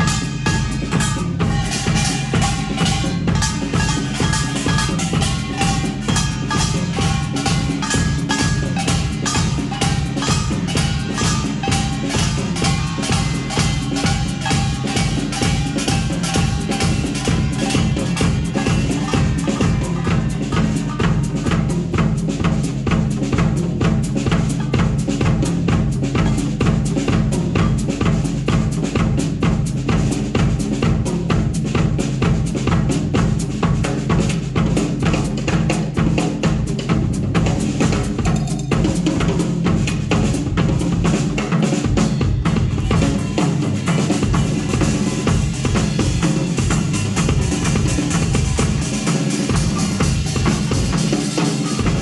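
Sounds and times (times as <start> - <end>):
drum kit fast beat: 0.0 - 52.0
full band music: 0.0 - 52.0.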